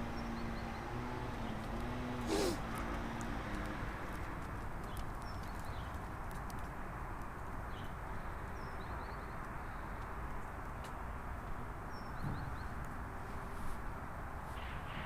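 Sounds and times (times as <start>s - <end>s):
small birds chirping: 0.0s - 10.8s.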